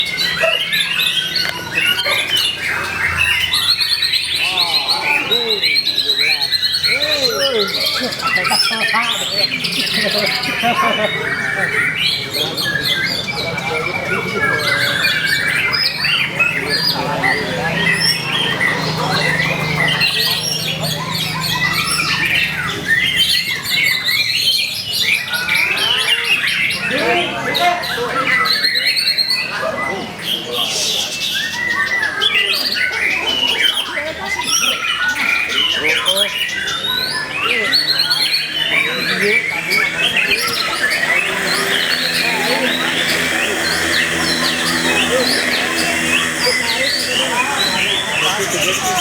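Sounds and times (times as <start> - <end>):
songbird singing whistles and squawks: 0.0 - 49.0
songbird chirps and trills: 31.2 - 49.0
low whistled bird notes: 34.4 - 49.0.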